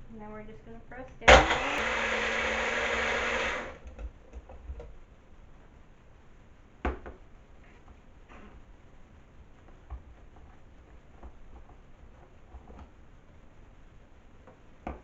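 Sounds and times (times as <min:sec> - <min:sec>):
blender motor running: 0:01.3 - 0:03.8.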